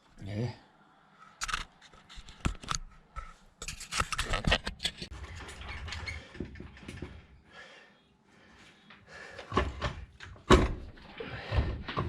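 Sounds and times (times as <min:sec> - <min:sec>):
metal parts clicking and scraping: 0:01.4 - 0:03.0, 0:03.6 - 0:07.1.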